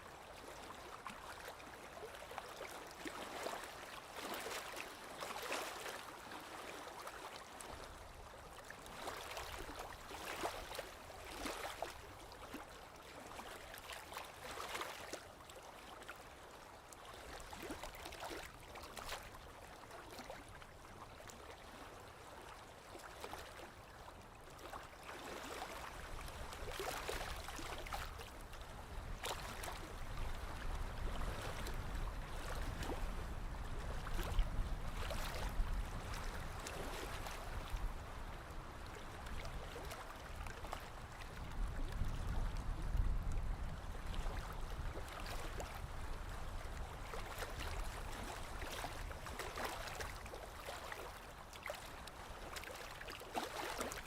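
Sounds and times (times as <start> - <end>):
lake waves lapping on shore: 0.0 - 54.0
little water splashes: 0.6 - 16.5, 17.1 - 20.6, 21.6 - 31.8, 46.6 - 54.0.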